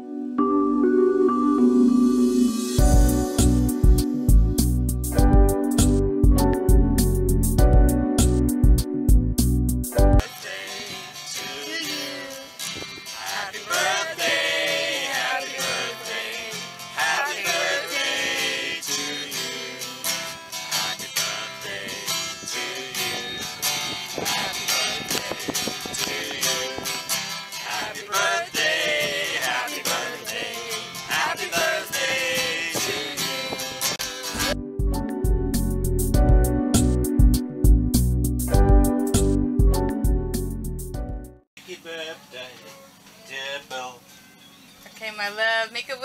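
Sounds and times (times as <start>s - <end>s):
guitar music with bending melody: 0.5s - 13.2s, 19.6s - 27.9s, 29.5s - 41.4s.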